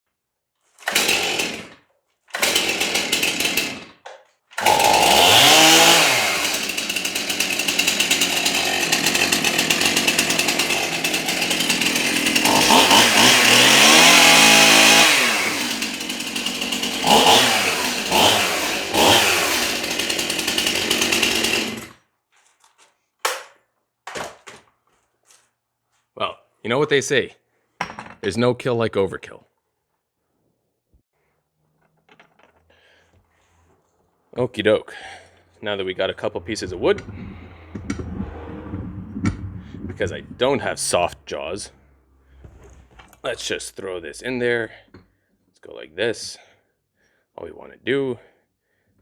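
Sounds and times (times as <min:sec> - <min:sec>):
chainsaw cutting wood: 0:00.7 - 0:22.1, 0:36.0 - 0:41.5.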